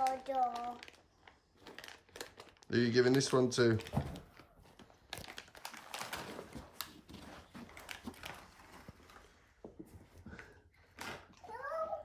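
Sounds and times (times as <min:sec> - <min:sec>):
dog treats clicking and rustling: 0:00.0 - 0:03.9.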